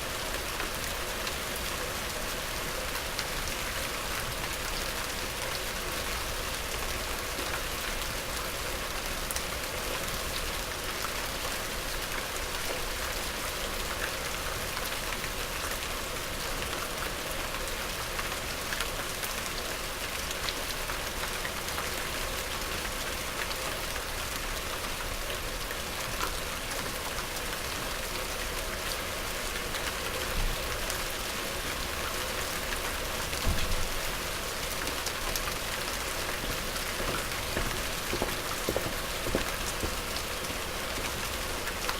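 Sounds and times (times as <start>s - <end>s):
rain falling: 0.0s - 41.9s
drops ticking on a surface: 36.4s - 40.3s
low bumps: 36.4s - 40.3s.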